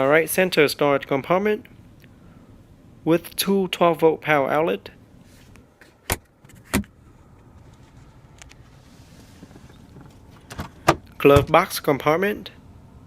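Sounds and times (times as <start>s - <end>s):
faint steady hiss: 6.9s - 13.0s.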